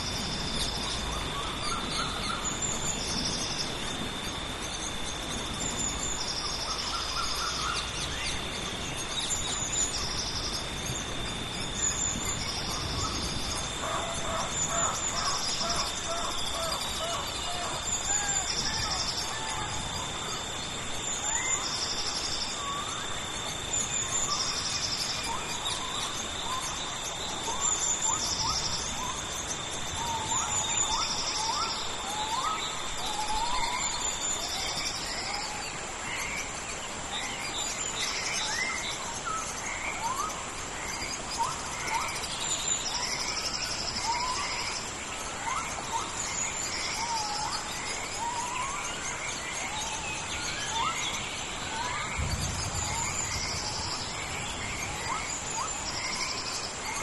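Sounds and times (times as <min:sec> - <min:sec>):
rain hissing: 0:00.0 - 0:07.1, 0:50.9 - 0:57.0
birds calling in rising whistles: 0:00.0 - 0:57.0
high insect whine: 0:00.0 - 0:57.0
insects buzzing in pulses: 0:00.0 - 0:57.0
steady insect tone: 0:00.0 - 0:57.0.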